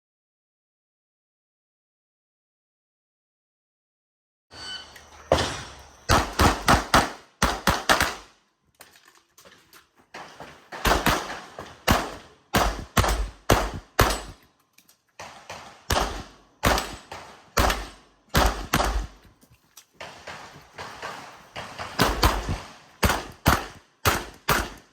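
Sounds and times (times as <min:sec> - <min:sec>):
handgun shots: 0:05.4 - 0:08.3, 0:10.7 - 0:14.5, 0:15.2 - 0:19.3, 0:20.0 - 0:24.9.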